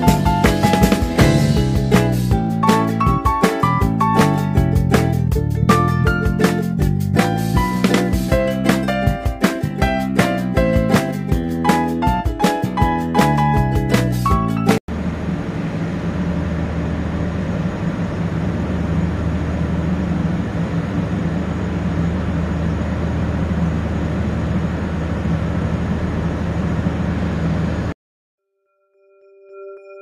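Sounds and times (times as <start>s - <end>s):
low mechanical rumble: 14.9s - 28.0s.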